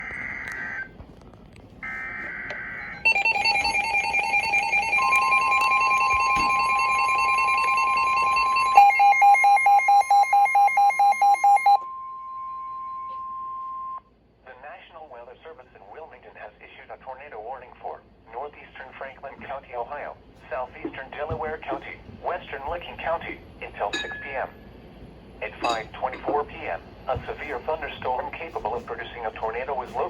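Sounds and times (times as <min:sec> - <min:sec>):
steady warning alarm tone: 0:01.8 - 0:14.0
warbling alarm and rapid beeping: 0:01.8 - 0:14.0.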